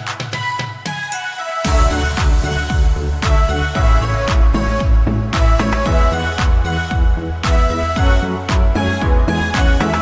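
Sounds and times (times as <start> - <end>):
upbeat electronic music: 0.0 - 10.0.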